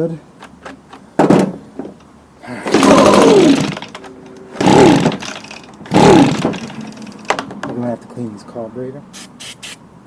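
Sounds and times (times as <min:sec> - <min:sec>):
small engine pull-start cranking: 0:02.6 - 0:07.5.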